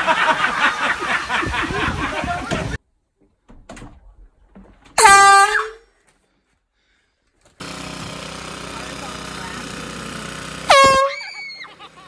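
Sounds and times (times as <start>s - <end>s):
air horn blast: 5.0s - 5.8s, 10.7s - 11.3s.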